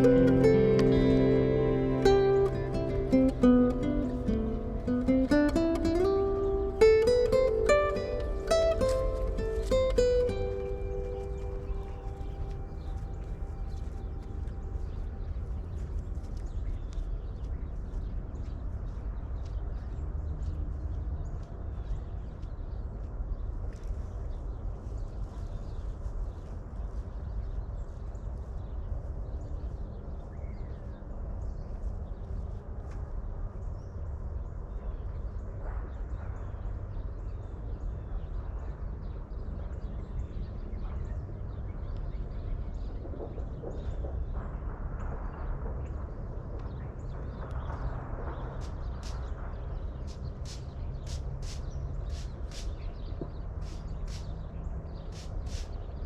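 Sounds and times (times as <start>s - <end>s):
steady low rumble: 0.0s - 56.0s
faint bird calls: 50.0s - 56.0s.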